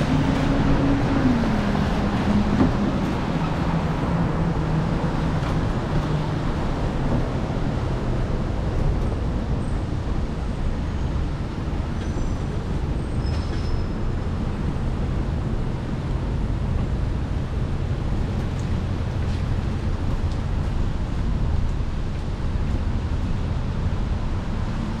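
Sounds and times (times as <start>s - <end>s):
city street traffic rumble: 0.0s - 25.0s.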